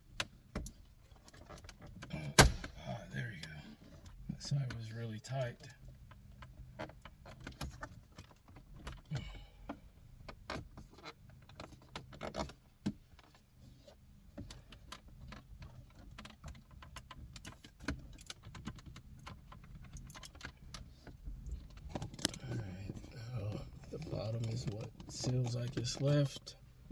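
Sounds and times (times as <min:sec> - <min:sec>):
faint low hum: 0:21.2 - 0:26.9.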